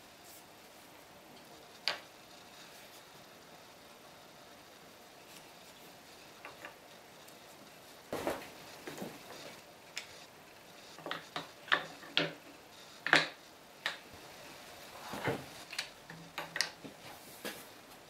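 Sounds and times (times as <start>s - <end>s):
small objects knocking and clicking: 13.0s - 14.0s.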